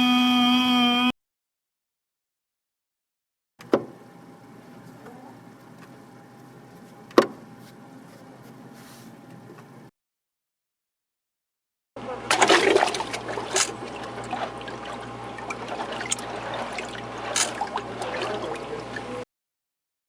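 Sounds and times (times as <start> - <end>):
small water splashes: 12.3 - 19.2
water running and trickling: 12.7 - 19.2.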